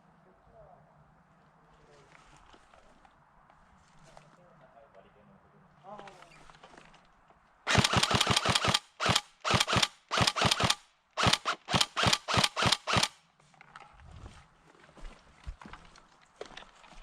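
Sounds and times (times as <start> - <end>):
airsoft gun firing: 7.7 - 13.2.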